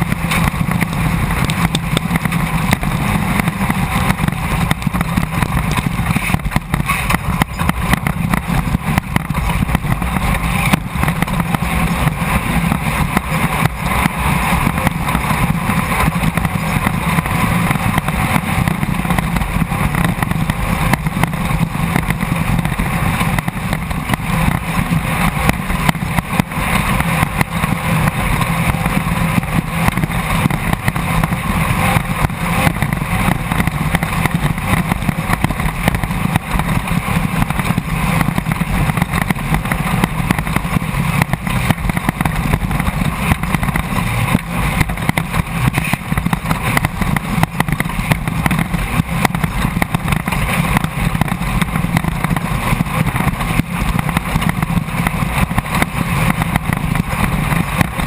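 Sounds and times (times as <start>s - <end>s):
buggy engine running hard: 0.0s - 58.0s
knocks and rattles: 0.0s - 58.0s.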